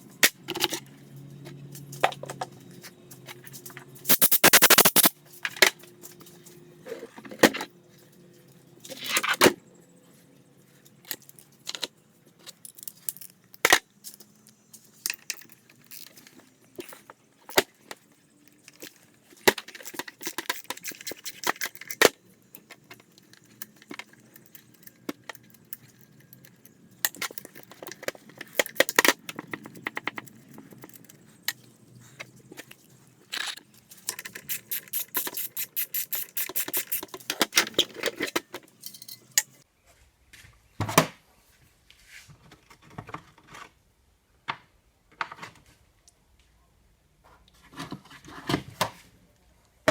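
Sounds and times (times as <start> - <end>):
metal tools clinking: 33.3 - 39.6.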